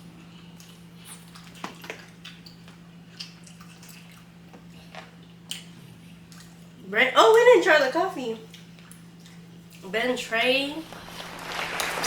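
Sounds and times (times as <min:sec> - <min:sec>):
wet eating clicks and smacks: 0:00.6 - 0:06.8, 0:08.4 - 0:09.8
steady low hum: 0:08.5 - 0:12.0.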